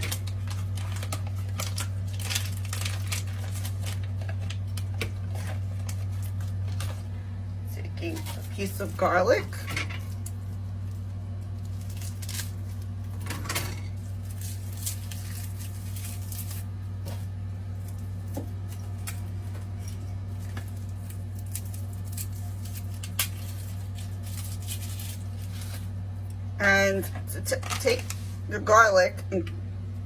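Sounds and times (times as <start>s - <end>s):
steady low hum: 0.0s - 30.0s
hands handling garlic skin: 13.9s - 26.4s.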